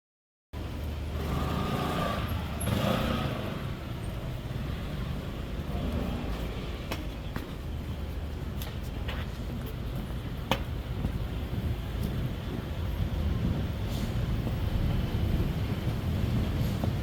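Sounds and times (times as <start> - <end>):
rumble of traffic: 0.6 - 17.0
vehicle passing close by: 1.1 - 4.0.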